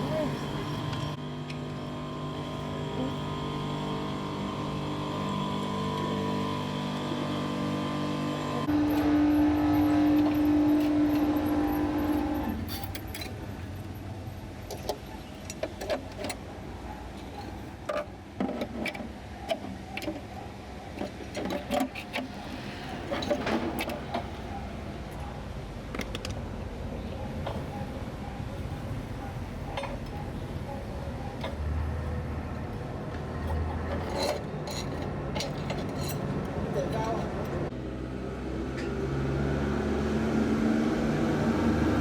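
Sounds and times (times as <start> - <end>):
mechanical hum: 0.0 - 18.4
metal parts clicking and clinking: 10.2 - 13.9, 33.4 - 37.4.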